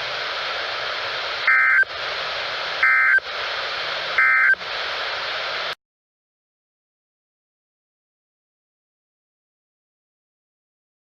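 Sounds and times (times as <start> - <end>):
radio hiss: 0.0 - 5.8
two-tone digital data bursts: 1.5 - 1.9, 2.8 - 3.2, 4.2 - 4.6.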